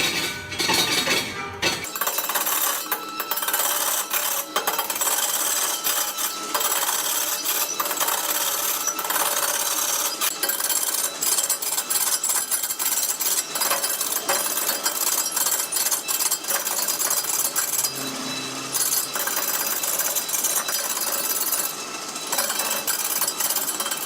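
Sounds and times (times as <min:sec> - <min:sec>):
power tool rasping wood: 0:02.6 - 0:24.0.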